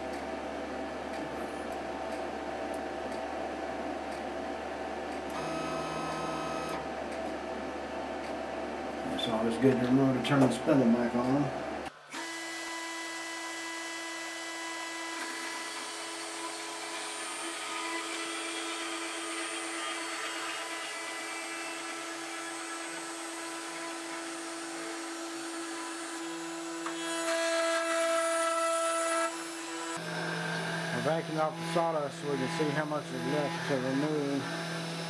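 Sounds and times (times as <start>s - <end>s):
engraver spindle high whine: 5.2s - 7.8s, 27.8s - 35.0s
loud motor: 5.3s - 6.8s, 12.1s - 35.0s.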